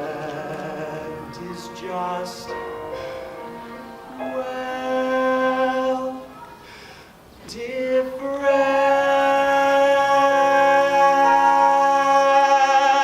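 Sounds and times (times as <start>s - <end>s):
singer holding long note: 0.0s - 6.6s, 7.6s - 13.0s
soft instrumental accompaniment: 0.0s - 6.6s.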